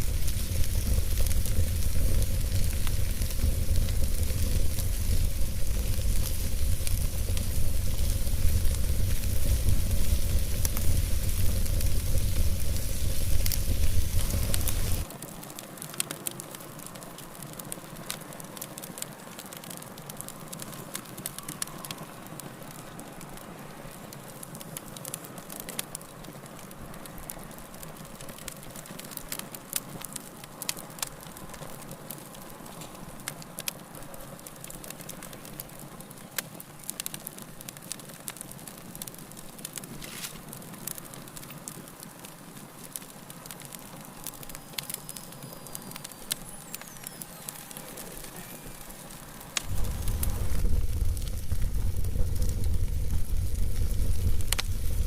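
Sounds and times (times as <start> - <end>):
deep rumble: 0.0 - 15.0, 49.6 - 55.0
wood fire crackling and popping: 0.0 - 55.0.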